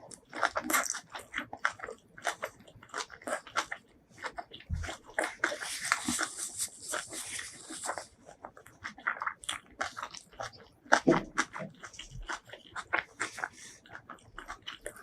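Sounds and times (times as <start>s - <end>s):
chewing and crunching food: 0.0s - 15.0s.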